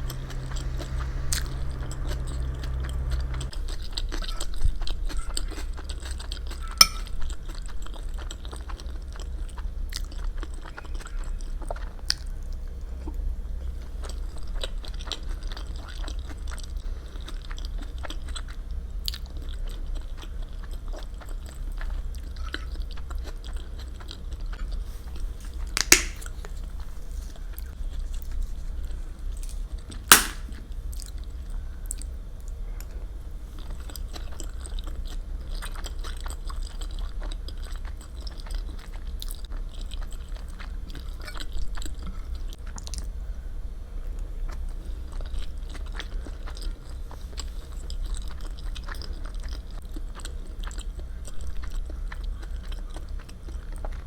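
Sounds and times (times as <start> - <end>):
low hum: 0.0 - 3.6
chewing food: 0.0 - 43.2, 44.0 - 54.0
sharp clicks: 25.8 - 26.2, 30.1 - 30.5.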